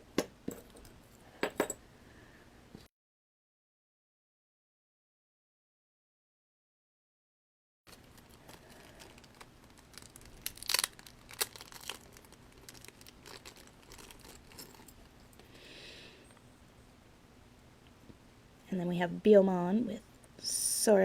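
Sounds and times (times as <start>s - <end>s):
packaging wrapper crinkling and tearing: 7.9s - 15.2s.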